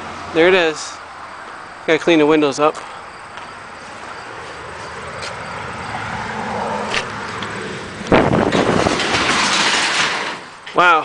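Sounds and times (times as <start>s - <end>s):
garage door rolling up: 6.9s - 11.0s.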